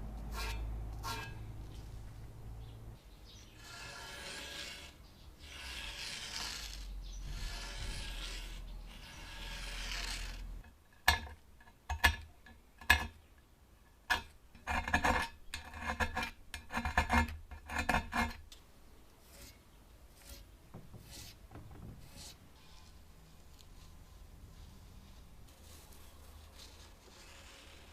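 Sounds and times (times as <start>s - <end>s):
rubbing or scraping: 0.2s - 2.3s, 3.5s - 10.7s, 19.2s - 27.9s.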